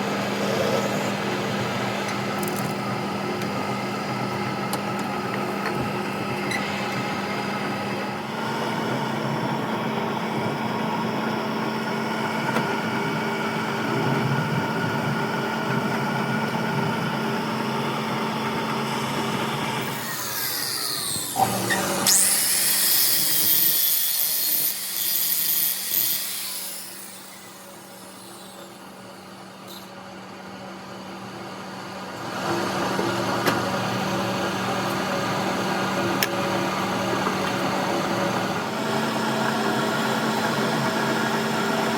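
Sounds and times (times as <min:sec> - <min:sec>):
workshop machine humming: 0:00.0 - 0:41.9
power tool grinding steel: 0:19.8 - 0:29.1.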